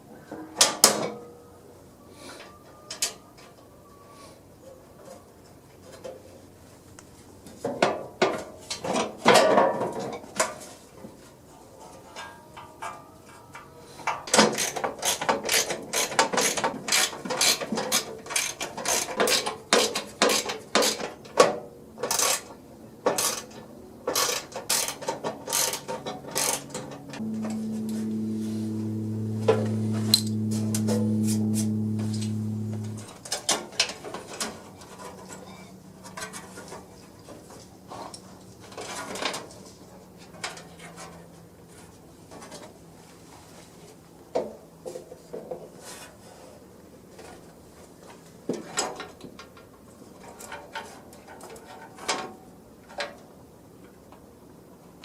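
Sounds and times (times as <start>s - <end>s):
electric motor hum: 27.2s - 33.1s.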